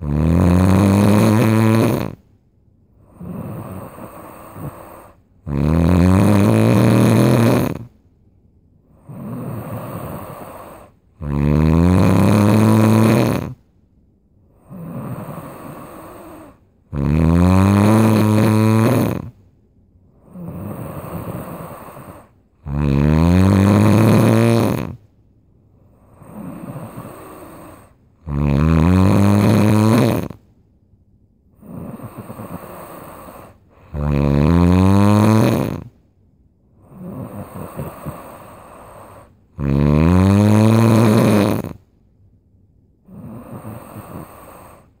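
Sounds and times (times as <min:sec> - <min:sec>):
loud snoring: 0:00.0 - 0:02.3, 0:03.0 - 0:08.0, 0:08.9 - 0:13.6, 0:14.6 - 0:19.4, 0:20.2 - 0:25.0, 0:25.9 - 0:30.4, 0:31.6 - 0:36.0, 0:36.8 - 0:41.9, 0:43.0 - 0:45.0
breathy breath: 0:03.0 - 0:05.4, 0:08.9 - 0:11.1, 0:14.5 - 0:16.8, 0:20.1 - 0:22.5, 0:25.7 - 0:28.2, 0:31.6 - 0:34.1, 0:36.7 - 0:39.5, 0:43.0 - 0:45.0.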